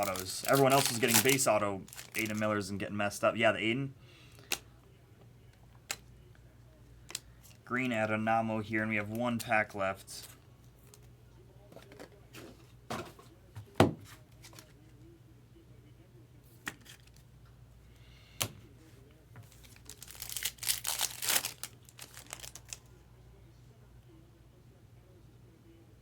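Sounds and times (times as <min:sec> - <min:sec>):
wrapper tearing and crinkling: 0:00.0 - 0:02.4, 0:19.5 - 0:22.8.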